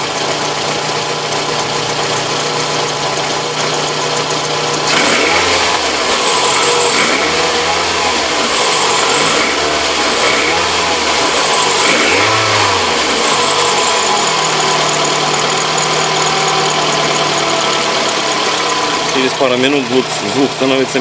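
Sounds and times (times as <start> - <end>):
car engine idling and revving: 0.0 - 21.0
high engine whistle: 4.9 - 19.0.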